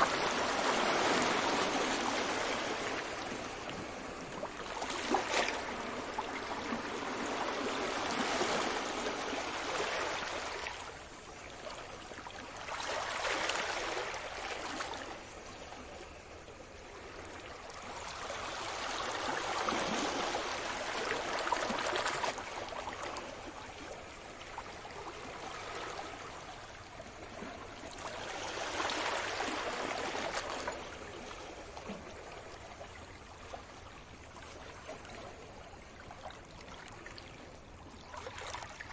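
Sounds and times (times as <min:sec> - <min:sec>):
sea waves breaking on beach: 0:00.0 - 0:11.3, 0:12.3 - 0:15.4, 0:16.1 - 0:23.4, 0:27.6 - 0:32.6.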